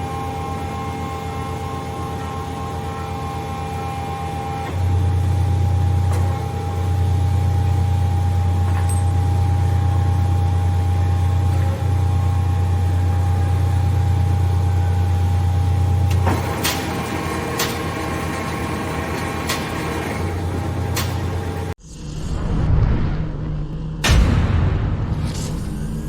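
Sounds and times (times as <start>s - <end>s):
loud low hum: 0.0s - 17.1s, 20.3s - 26.0s
bandsaw high whine: 0.0s - 21.8s.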